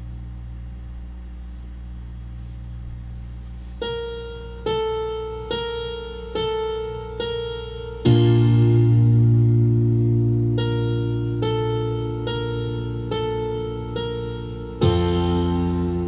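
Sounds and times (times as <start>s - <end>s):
electric piano chord and notes: 3.8s - 16.0s.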